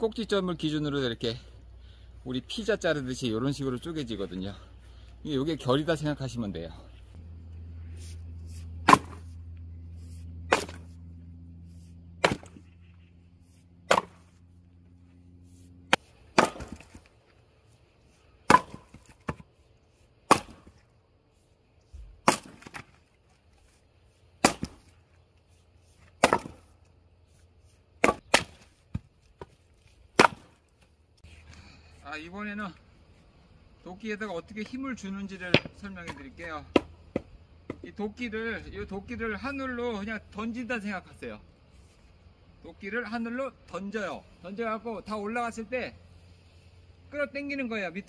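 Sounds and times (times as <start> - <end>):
axe chopping wood: 8.5 - 9.4, 10.4 - 11.0, 12.1 - 12.8, 13.8 - 14.4, 15.9 - 17.2, 18.4 - 19.5, 20.2 - 20.9, 22.0 - 23.0, 24.4 - 25.0, 26.0 - 26.8, 28.0 - 30.9, 35.5 - 37.9.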